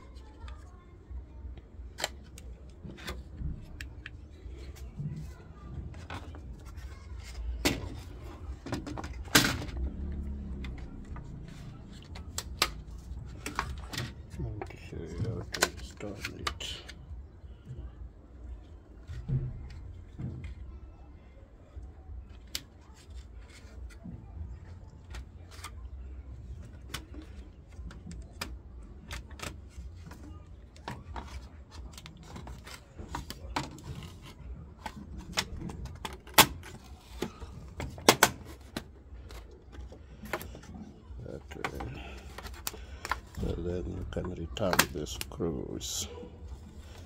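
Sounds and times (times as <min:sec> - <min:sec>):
plastic and metal clacking: 0:26.5 - 0:45.4.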